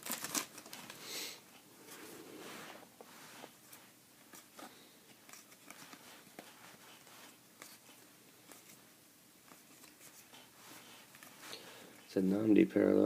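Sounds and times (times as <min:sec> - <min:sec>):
trading cards flipped by hand: 0:04.3 - 0:08.8.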